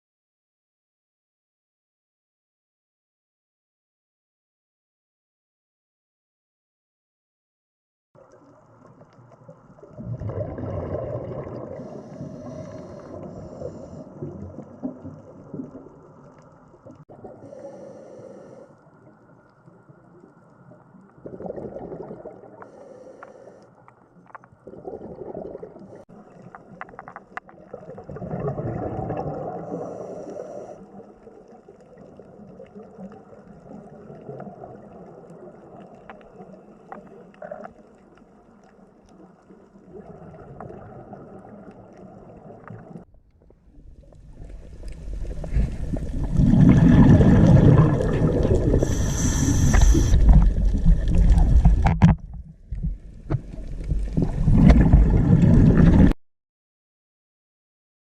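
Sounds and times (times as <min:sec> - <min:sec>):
water rushing and gurgling: 0:24.6 - 0:56.2.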